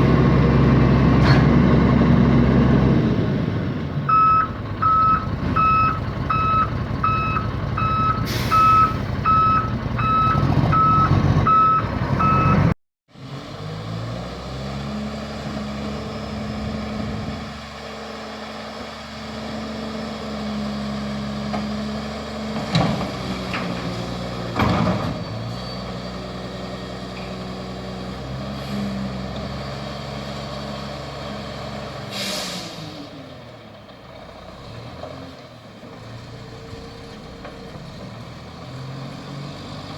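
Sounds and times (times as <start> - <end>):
diesel truck engine: 0.0 - 39.9
reverse alarm beeping: 4.1 - 12.7.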